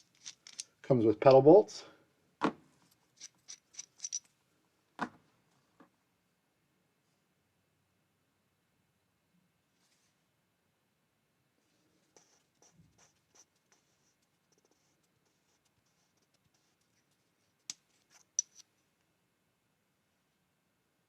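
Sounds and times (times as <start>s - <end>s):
faint scratching of handled parts: 0.0s - 0.8s, 2.7s - 4.4s, 9.7s - 10.2s, 11.6s - 18.9s.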